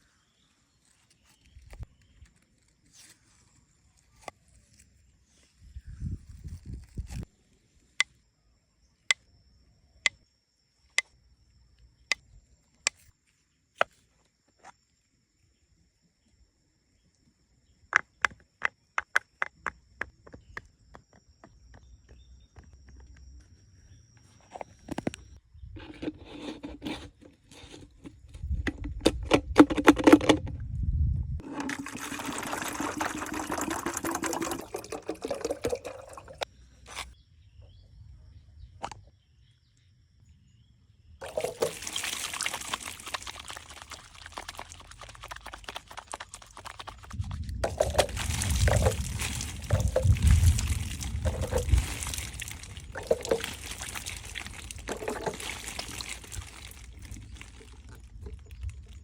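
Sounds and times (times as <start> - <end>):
knocks and handling clatter: 25.8 - 30.5
water pouring and trickling: 31.4 - 37.2, 41.2 - 59.0.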